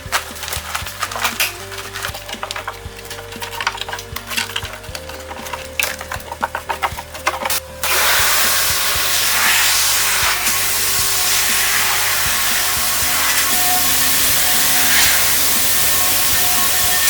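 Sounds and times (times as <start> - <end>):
background music: 0.0 - 17.0
tapping and scraping: 0.0 - 17.0
loud rushing hiss: 7.8 - 17.0.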